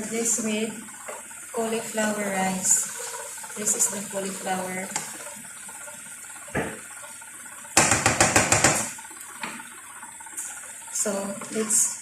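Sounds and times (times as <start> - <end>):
rushing rattling kitchen noise: 7.8 - 9.0.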